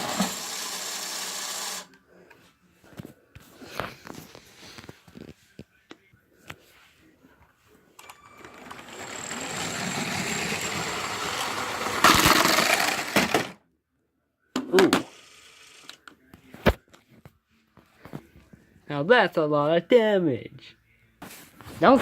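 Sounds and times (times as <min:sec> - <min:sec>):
toy train motor whine: 0:00.0 - 0:01.9, 0:08.0 - 0:13.5, 0:15.1 - 0:16.0
clatter of plastic pieces: 0:08.4 - 0:13.6.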